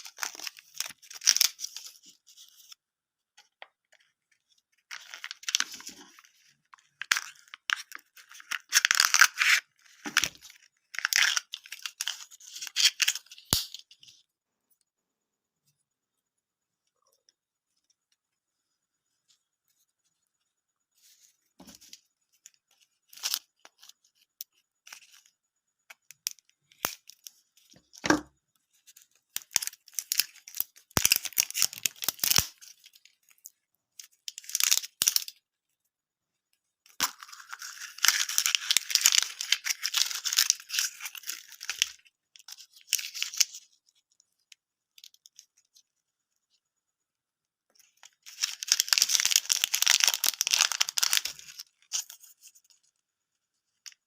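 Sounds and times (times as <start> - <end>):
candy wrapper tearing and crinkling: 0.0 - 2.4, 4.8 - 14.0, 29.1 - 35.4, 36.9 - 43.6, 47.9 - 52.8.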